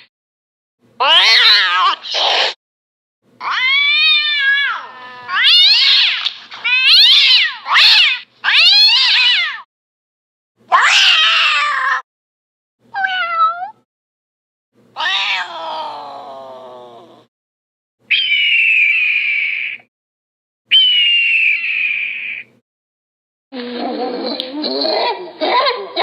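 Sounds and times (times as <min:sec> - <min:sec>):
cat meowing: 0:03.4 - 0:09.6, 0:13.0 - 0:13.8, 0:15.0 - 0:16.5.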